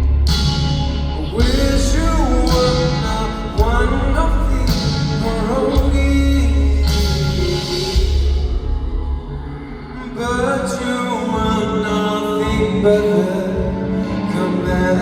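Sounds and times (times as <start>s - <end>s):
rock-pop band playing: 0.0s - 15.0s
man singing: 0.9s - 15.0s.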